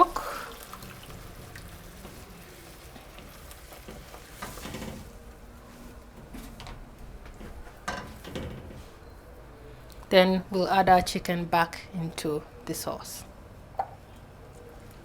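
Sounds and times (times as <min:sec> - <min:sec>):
sauce sizzling in a frying pan: 0:00.0 - 0:04.7.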